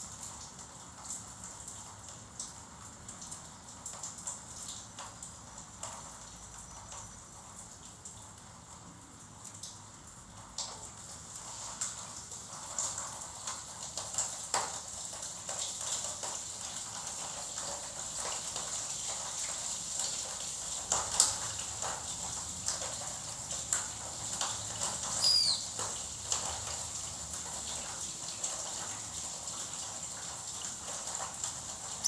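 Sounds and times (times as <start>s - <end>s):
high falling bird call: 25.1s - 25.8s.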